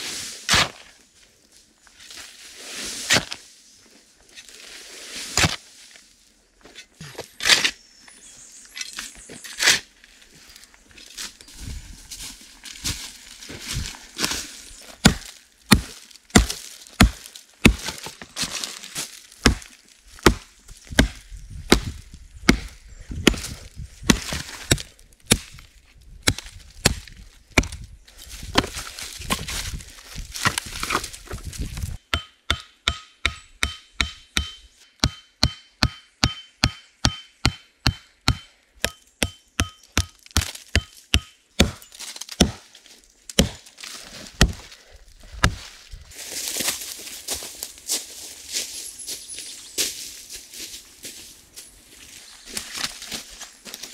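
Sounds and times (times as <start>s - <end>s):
axe chopping wood: 15.0s - 18.2s, 19.4s - 25.6s, 26.2s - 27.8s, 30.4s - 42.7s, 43.3s - 43.7s, 44.3s - 44.7s, 45.4s - 45.7s.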